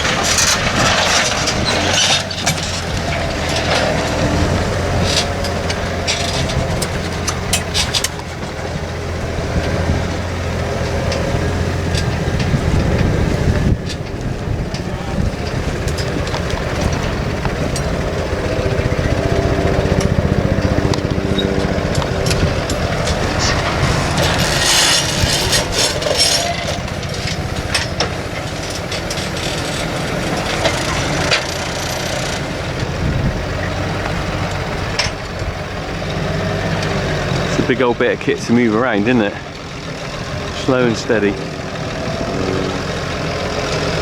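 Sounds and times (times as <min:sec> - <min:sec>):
sharp clicks and cracks: 0:00.0 - 0:32.9
tractor engine running: 0:00.0 - 0:44.0.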